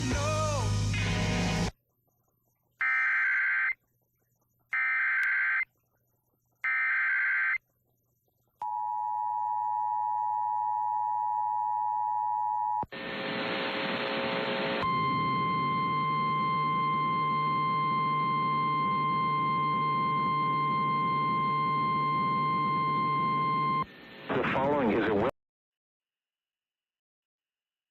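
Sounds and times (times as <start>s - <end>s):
hum: 8.6s - 25.3s
two-tone attention signal: 14.8s - 23.8s
burst of noise: 24.2s - 25.2s.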